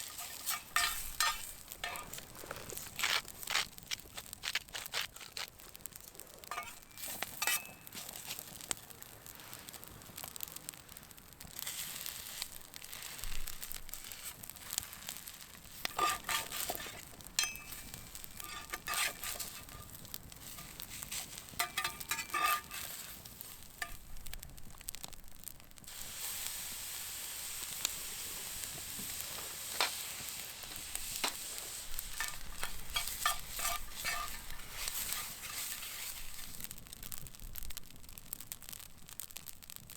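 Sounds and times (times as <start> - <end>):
metal utensil scraping plate: 0.0 - 3.2, 6.5 - 7.8, 15.8 - 23.2, 30.7 - 36.6
beef sizzling on griddle: 0.0 - 39.9.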